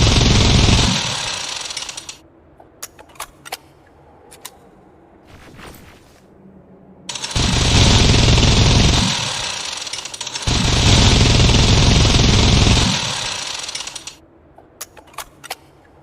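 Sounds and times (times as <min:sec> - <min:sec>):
minigun firing: 0:00.0 - 0:02.2, 0:07.1 - 0:14.2
sharp clicks: 0:12.3 - 0:14.2.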